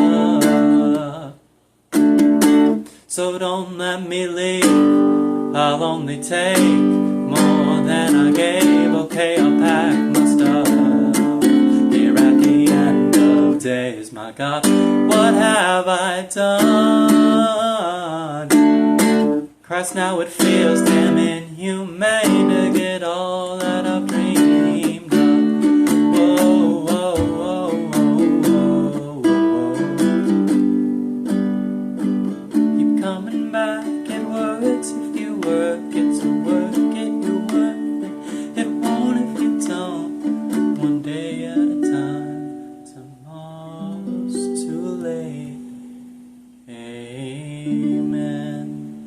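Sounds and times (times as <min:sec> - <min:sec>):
plucked string accompaniment: 0:00.0 - 0:01.3, 0:01.9 - 0:03.0, 0:04.0 - 0:49.0
wordless vocals: 0:00.0 - 0:01.7, 0:02.7 - 0:30.9, 0:32.3 - 0:45.8, 0:46.6 - 0:49.0.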